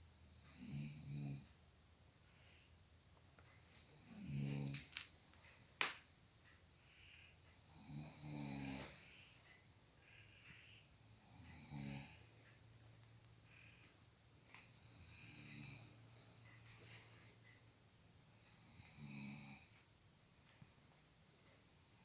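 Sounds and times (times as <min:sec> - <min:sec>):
insects chirping: 0:00.0 - 0:22.0
person snoring: 0:00.6 - 0:01.5, 0:04.0 - 0:04.9, 0:07.7 - 0:09.1, 0:11.1 - 0:12.4, 0:14.7 - 0:16.0, 0:18.5 - 0:19.8.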